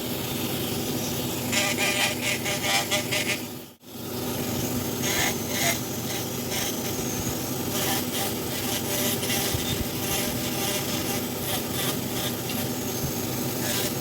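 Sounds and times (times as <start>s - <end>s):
steady background hum: 0.0s - 14.0s
tool rasping on wood: 1.5s - 3.5s, 5.0s - 14.0s.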